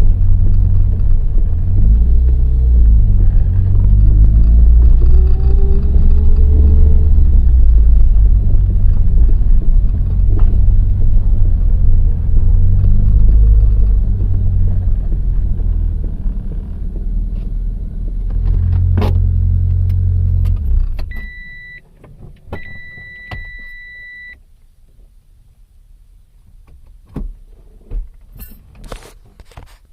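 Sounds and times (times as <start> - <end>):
car engine running with rattle: 0.0 - 23.7
car warning chime beeps: 21.1 - 21.8, 22.6 - 24.4.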